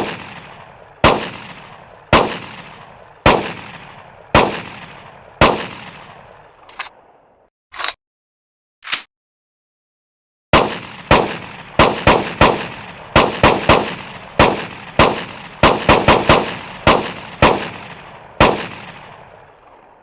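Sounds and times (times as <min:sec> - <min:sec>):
pistol shots with echo: 0:10.6 - 0:17.8.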